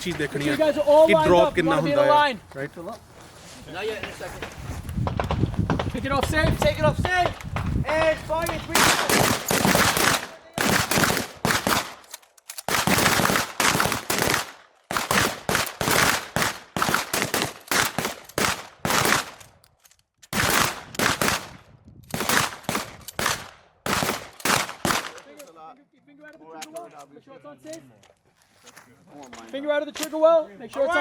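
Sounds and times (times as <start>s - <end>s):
shotgun shots: 7.2s - 12.1s, 12.7s - 19.4s, 20.3s - 25.4s.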